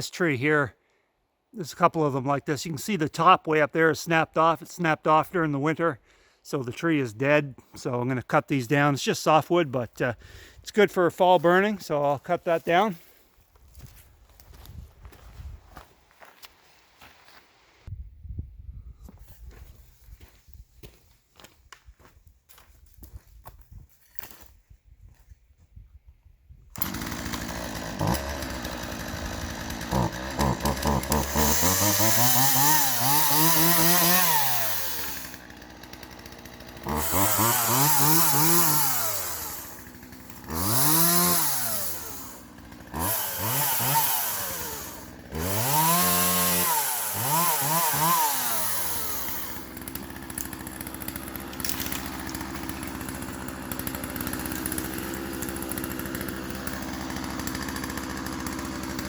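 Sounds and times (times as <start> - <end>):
chainsaw idling and revving: 8.7 - 13.2, 26.7 - 59.0.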